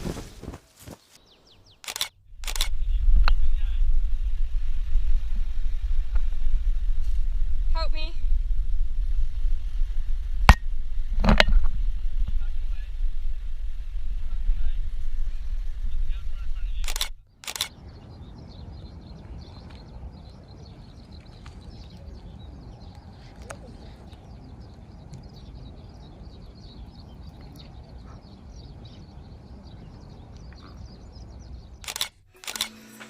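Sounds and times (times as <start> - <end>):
wind on microphone rumble: 2.3 - 16.9
faint bird chirps: 16.8 - 32.7.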